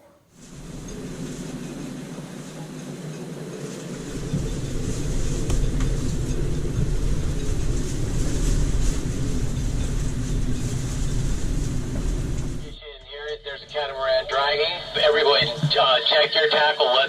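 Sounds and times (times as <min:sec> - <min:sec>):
wind buffeting microphone: 0:00.3 - 0:12.8.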